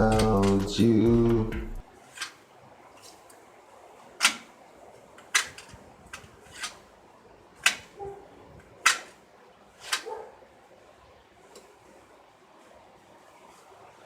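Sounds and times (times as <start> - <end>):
sharp clicks and light knocks: 0.0 - 0.8, 4.2 - 4.5.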